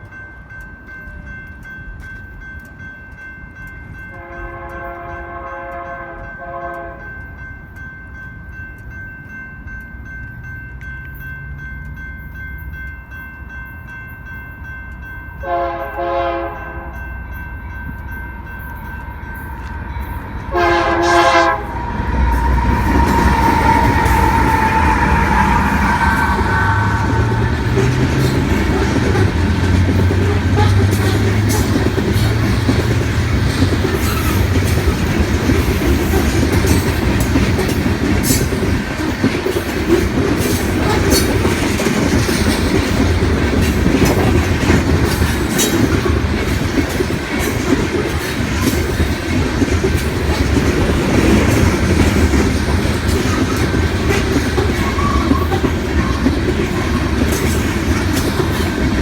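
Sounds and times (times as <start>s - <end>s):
train wheels rumbling on rail: 0.0s - 59.0s
wheels clacking over rail joints: 18.0s - 59.0s.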